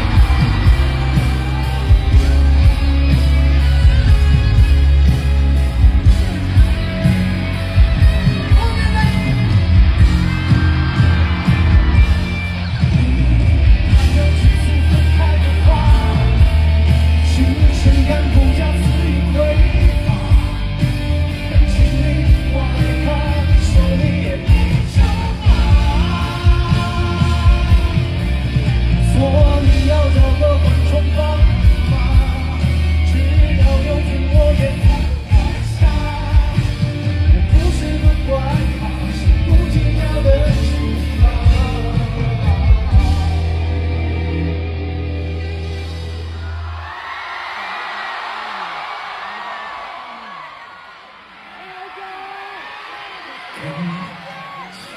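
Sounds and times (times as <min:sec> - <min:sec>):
live rock band playing loud: 0:00.0 - 0:46.8
heavy drums: 0:00.0 - 0:51.2
person singing: 0:13.8 - 0:44.2.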